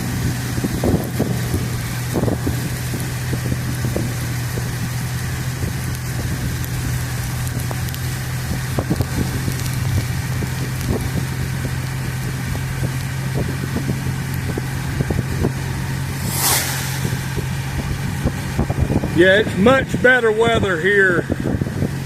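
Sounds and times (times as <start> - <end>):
car engine and road drone: 0.0 - 22.0
loud rush of noise: 15.9 - 19.0.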